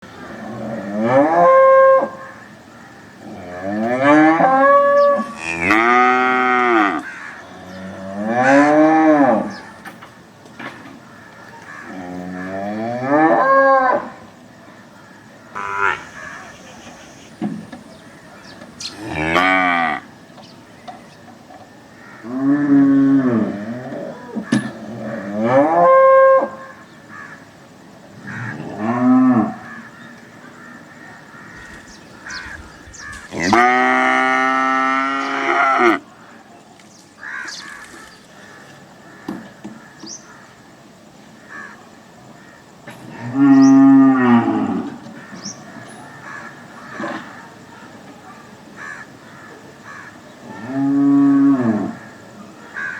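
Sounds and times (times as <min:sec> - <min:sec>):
cows mooing: 0:03.3 - 0:09.5, 0:15.5 - 0:20.1, 0:31.5 - 0:36.0.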